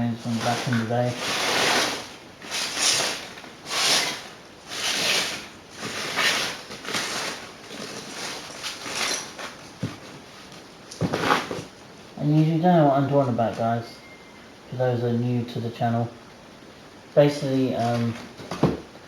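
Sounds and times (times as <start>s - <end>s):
debris rustling and scraping: 0.0s - 11.8s.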